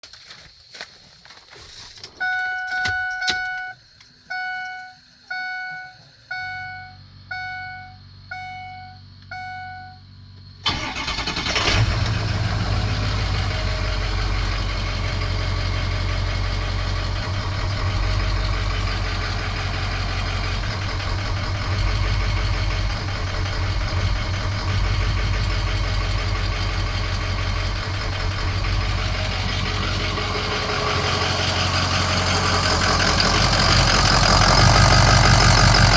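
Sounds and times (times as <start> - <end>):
dashboard warning chime: 2.2 - 10.0
diesel engine cranking and idling: 2.2 - 35.9.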